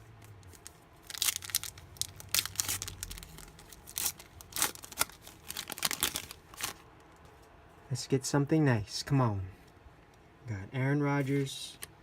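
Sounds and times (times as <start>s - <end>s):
foil wrapper tearing and crinkling: 0.4s - 6.8s.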